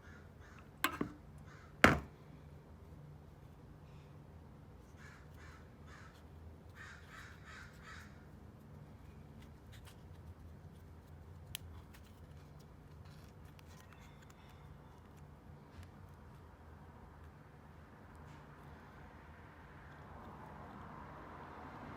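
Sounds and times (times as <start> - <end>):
crow cawing: 6.8 - 8.2.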